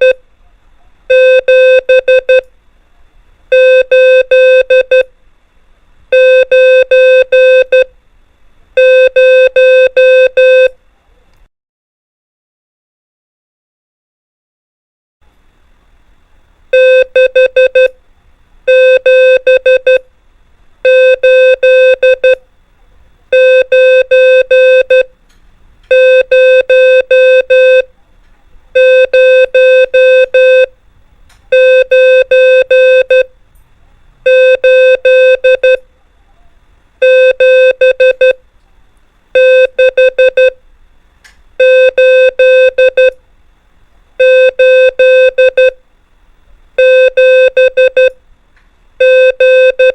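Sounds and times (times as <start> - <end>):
morse code beeps: 1.1 - 2.4, 3.5 - 5.1, 6.2 - 7.9, 8.8 - 10.7, 16.8 - 17.9, 18.7 - 20.0, 20.9 - 22.4, 23.3 - 25.1, 25.9 - 27.9, 28.8 - 30.7, 31.5 - 33.3, 34.3 - 35.9, 37.0 - 38.4, 39.4 - 40.6, 41.6 - 43.2, 44.2 - 45.8, 46.8 - 48.2, 49.0 - 49.9.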